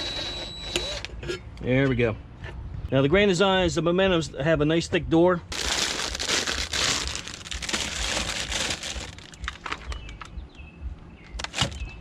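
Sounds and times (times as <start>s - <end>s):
rustling crinkling handling: 5.5s - 10.3s.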